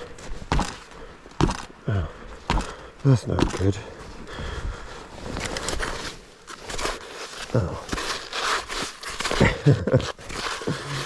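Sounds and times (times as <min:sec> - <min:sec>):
person grunting: 0:01.8 - 0:02.2
packed snow crunching and scraping: 0:03.0 - 0:11.0.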